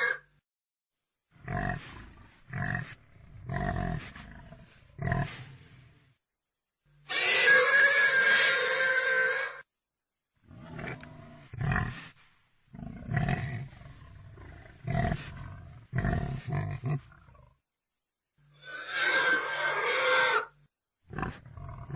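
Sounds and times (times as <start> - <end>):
pig squealing: 0.0 - 0.3, 7.1 - 9.6, 18.6 - 20.6
pig grunting: 1.4 - 5.8, 10.5 - 12.1, 12.8 - 17.5, 21.1 - 21.9.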